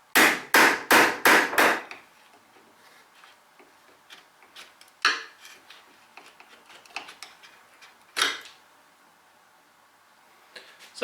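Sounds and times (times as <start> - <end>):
sharp knocks: 0.2 - 1.9.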